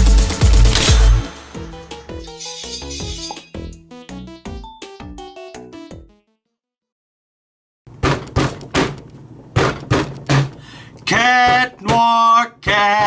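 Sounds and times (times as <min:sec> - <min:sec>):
sharp percussive hits: 0:00.4 - 0:03.5
held pitched jingle notes: 0:01.0 - 0:03.5.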